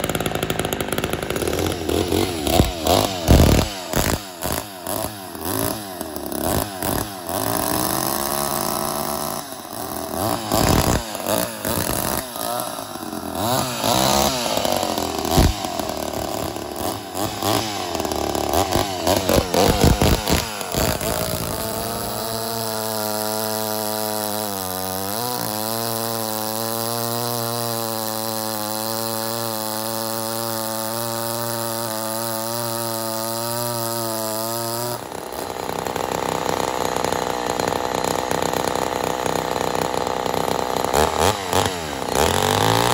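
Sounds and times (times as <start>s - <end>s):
chainsaw revving and idling: 0.0s - 42.9s.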